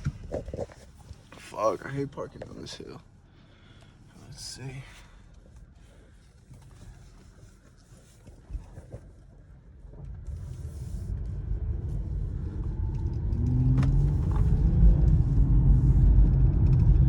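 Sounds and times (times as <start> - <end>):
car engine low rumble: 0.0 - 17.0
road noise: 9.9 - 17.0.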